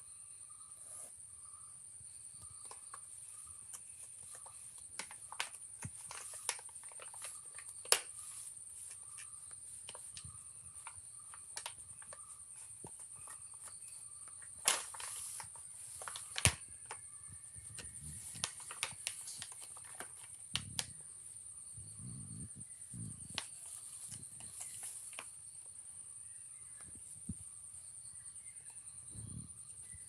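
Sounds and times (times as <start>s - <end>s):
small clicks and crinkles: 2.4s - 21.0s, 23.3s - 25.4s
kittens pawing plastic packet: 2.6s - 21.0s, 23.3s - 25.3s.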